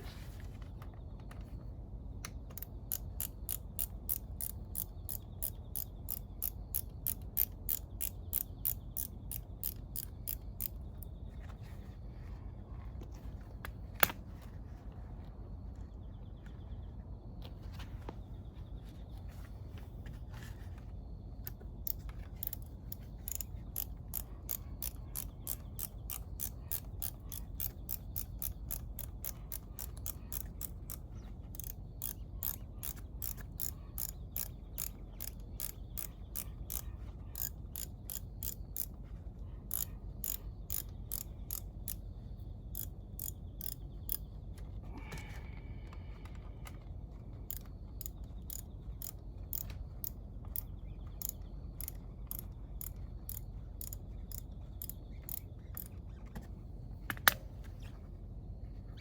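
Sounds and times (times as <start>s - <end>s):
ratchet wrench clicking: 2.6s - 10.8s, 21.5s - 38.9s, 39.7s - 42.0s, 42.7s - 44.3s, 47.5s - 55.9s.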